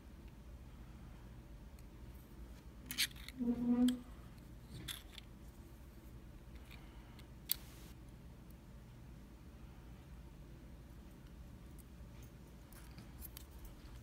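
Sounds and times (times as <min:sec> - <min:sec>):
lock pins and tools clicking: 0:02.8 - 0:03.4.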